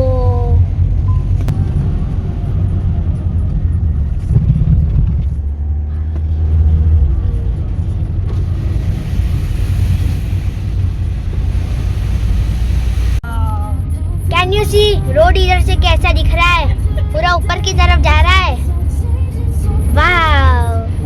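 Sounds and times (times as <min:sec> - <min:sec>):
car engine and road noise: 0:00.0 - 0:21.0
hiss: 0:08.4 - 0:13.2.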